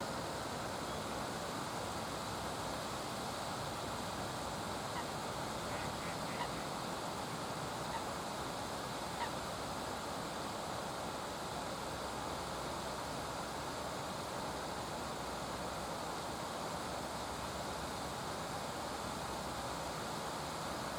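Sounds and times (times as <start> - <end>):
coot calls: 5.7 - 6.7.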